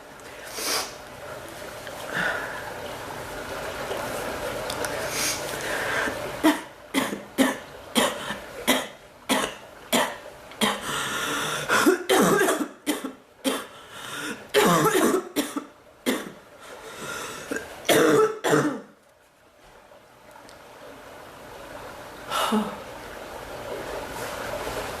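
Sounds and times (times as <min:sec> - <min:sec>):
woman coughing: 0:11.8 - 0:13.7, 0:14.6 - 0:16.4, 0:17.9 - 0:18.9.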